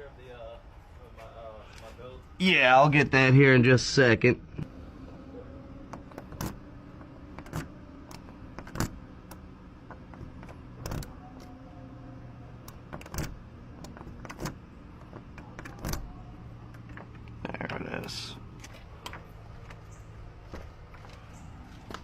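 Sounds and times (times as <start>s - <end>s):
steady low hum: 0.0s - 22.0s
lock-picking tools clicking in lock: 5.9s - 11.5s, 12.6s - 16.1s.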